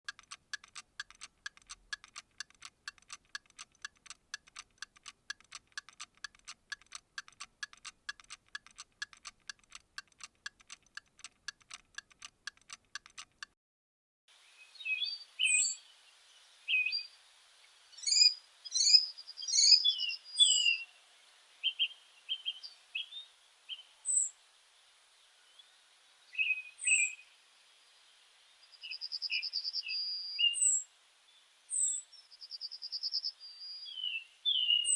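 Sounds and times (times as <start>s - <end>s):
sharp clicking chirps: 0.1s - 13.6s
birds chirping and singing: 17.9s - 20.9s, 31.8s - 34.9s
bird whistles and trills: 18.0s - 20.9s, 26.4s - 27.2s, 28.8s - 30.8s, 31.7s - 34.9s.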